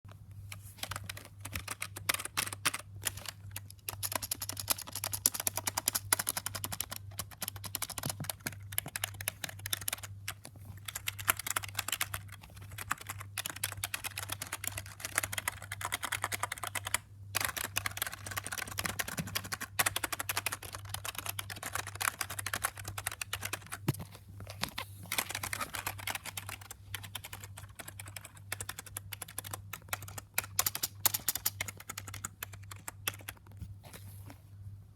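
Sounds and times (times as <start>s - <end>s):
fast typing on keyboard: 0.8s - 24.0s, 24.6s - 33.5s.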